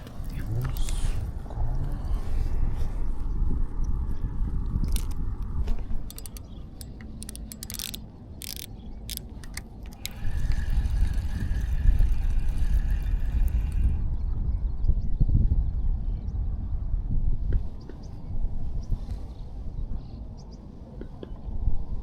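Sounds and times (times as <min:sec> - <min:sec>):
wind rumble on microphone: 0:00.0 - 0:22.0
sharp irregular clicks and rattles: 0:04.8 - 0:05.2, 0:05.8 - 0:14.0.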